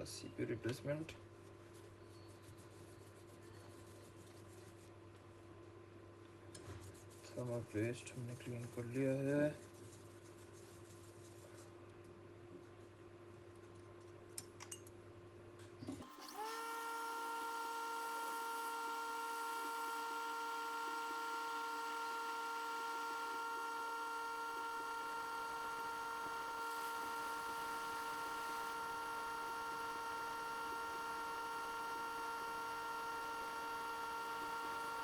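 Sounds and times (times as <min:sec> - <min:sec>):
hot air blower whining: 0:16.0 - 0:35.0.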